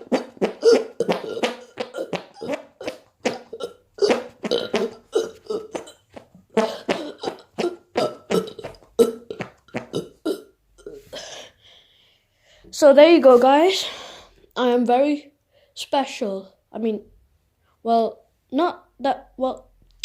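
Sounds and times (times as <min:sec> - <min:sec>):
armpit farts: 0:00.0 - 0:10.4
boy doing fake burps: 0:00.0 - 0:11.6.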